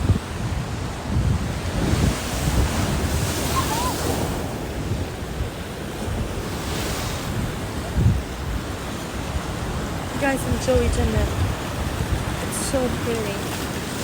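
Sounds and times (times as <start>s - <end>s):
sea waves breaking: 0.0s - 14.0s
wind buffeting microphone: 0.0s - 14.0s.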